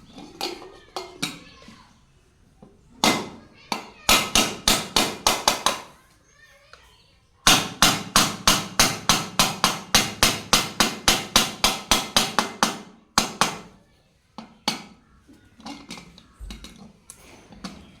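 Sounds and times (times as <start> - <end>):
hammer beating on metal: 3.0 - 5.9, 7.5 - 13.7.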